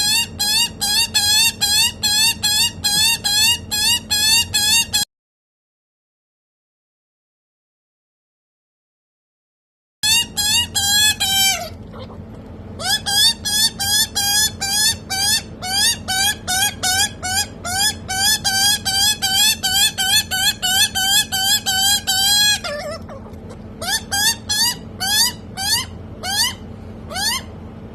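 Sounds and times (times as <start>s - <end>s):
young magpie begging squawks: 10.0s - 12.2s, 12.8s - 27.5s.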